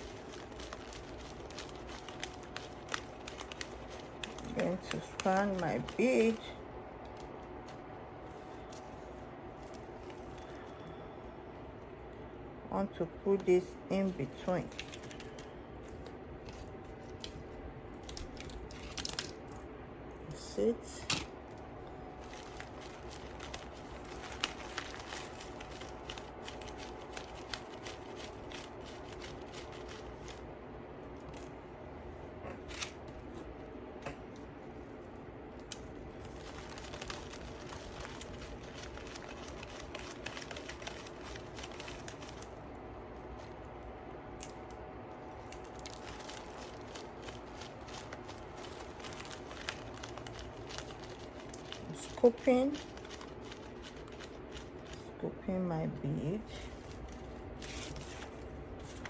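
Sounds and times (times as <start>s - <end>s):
beads clicking and rustling: 0.0s - 10.8s, 14.0s - 19.7s, 21.1s - 31.6s, 35.5s - 55.1s
faint room hum: 0.0s - 59.0s.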